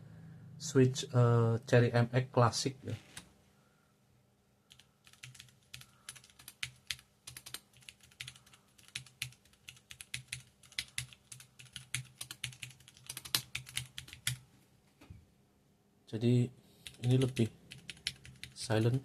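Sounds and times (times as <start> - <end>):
mechanical keyboard typing: 4.7 - 14.4, 16.8 - 19.0.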